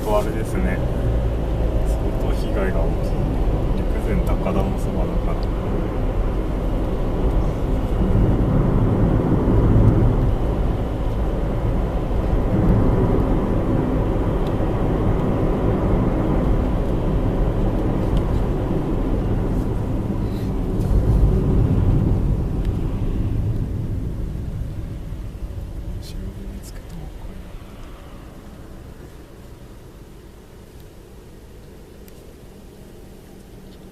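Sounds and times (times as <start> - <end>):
engine and tyre rumble in car: 0.0 - 33.9.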